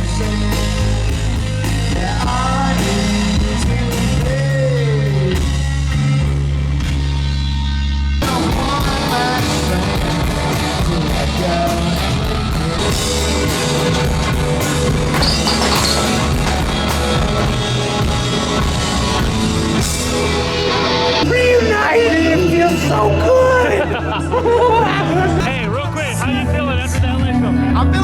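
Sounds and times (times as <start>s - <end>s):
drums and cymbals: 0.0s - 7.1s, 8.2s - 21.5s
live rock band playing: 0.0s - 28.0s
person singing: 1.8s - 5.6s, 8.2s - 13.1s.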